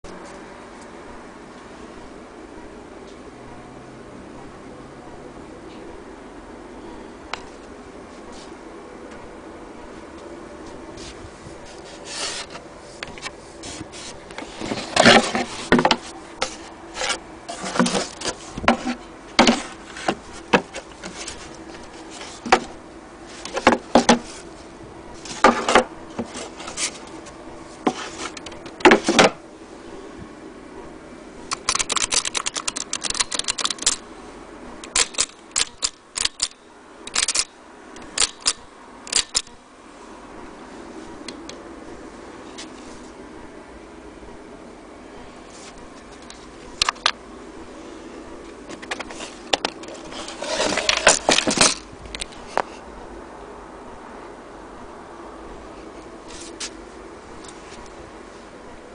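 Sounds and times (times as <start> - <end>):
typewriter keys clacking: 31.5 - 34.0.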